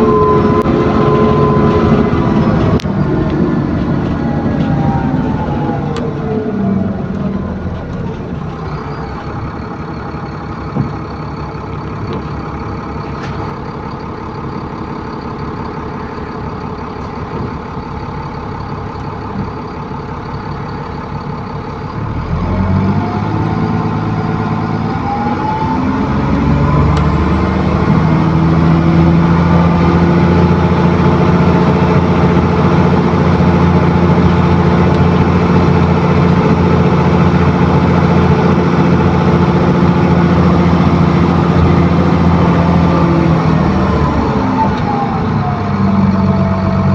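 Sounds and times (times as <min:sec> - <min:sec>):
faint high whine: 0:00.0 - 0:03.2
bus engine: 0:00.0 - 0:46.9.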